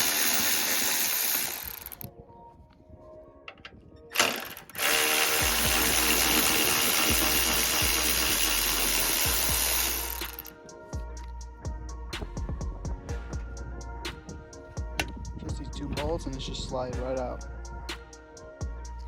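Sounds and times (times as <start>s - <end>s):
ratchet wrench ratcheting: 0.0s - 2.1s, 4.2s - 10.5s.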